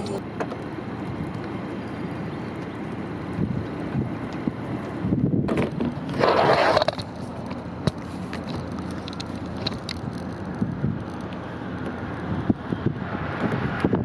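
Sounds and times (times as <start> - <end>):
wind buffeting microphone: 2.3 - 6.2, 7.4 - 14.0.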